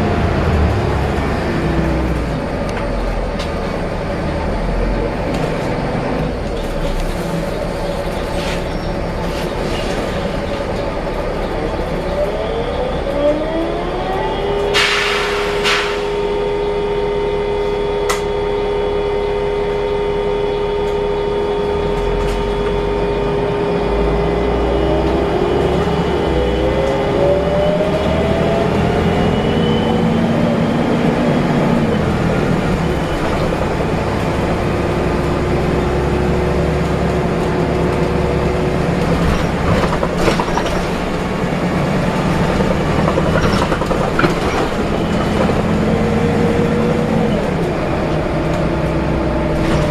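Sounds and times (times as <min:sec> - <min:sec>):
bus engine whining: 0:00.0 - 0:49.9
deep rumble: 0:00.0 - 0:49.9
knocks and rattles: 0:39.1 - 0:46.7.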